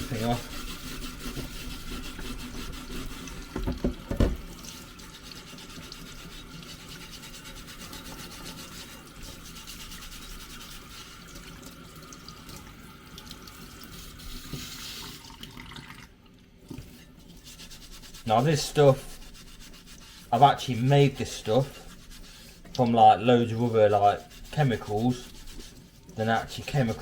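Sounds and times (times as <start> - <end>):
scouring pad rubbing metal: 0.0 - 11.3, 17.2 - 27.0
knocks: 3.6 - 4.5.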